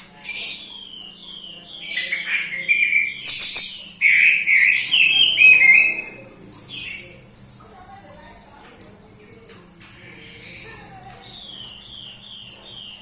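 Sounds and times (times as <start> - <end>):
songbird chirps and whistles: 0.4 - 6.2.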